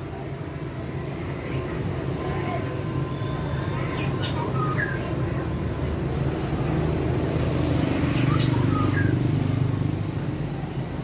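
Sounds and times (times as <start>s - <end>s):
vehicle engine humming: 0.0s - 11.0s
high bird chirps: 3.6s - 5.3s, 8.0s - 9.4s.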